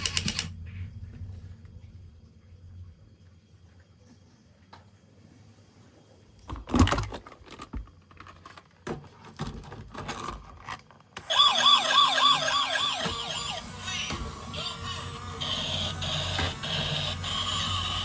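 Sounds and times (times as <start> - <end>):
plastic toy clicks and scrapes: 10.0 - 18.0
toy electronic siren wailing: 11.2 - 18.0.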